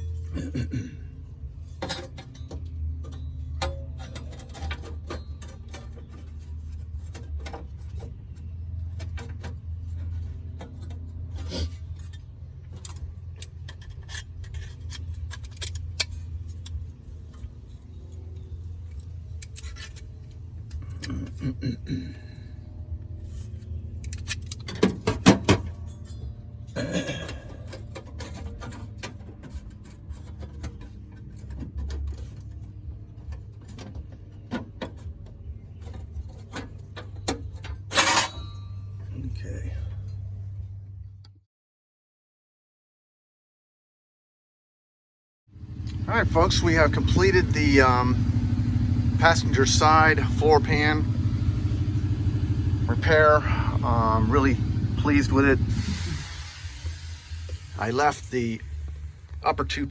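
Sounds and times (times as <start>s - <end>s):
metal tools clinking and rattling: 1.3s - 21.5s, 23.1s - 39.1s
steady low hum: 45.6s - 59.9s.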